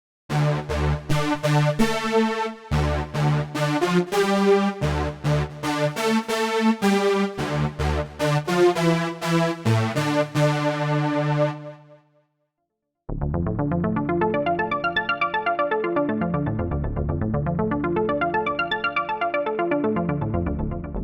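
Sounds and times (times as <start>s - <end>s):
bright synthesizer notes: 0.3s - 11.9s
synth bass notes: 0.3s - 11.9s, 13.1s - 14.8s, 16.2s - 17.9s.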